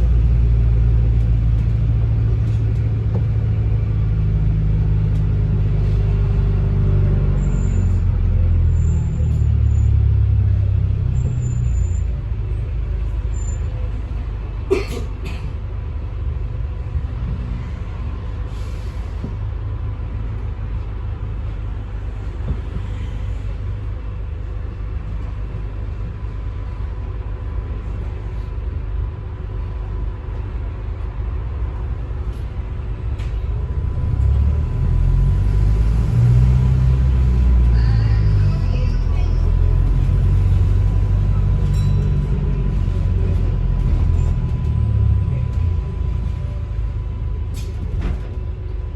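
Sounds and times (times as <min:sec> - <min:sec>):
bus engine rumble: 0:00.0 - 0:48.9
air brakes hissing: 0:18.5 - 0:19.2.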